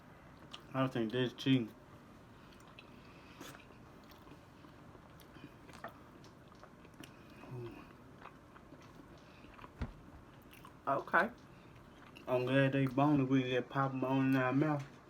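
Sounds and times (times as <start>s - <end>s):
people chewing: 0.3s - 1.2s, 2.2s - 15.0s.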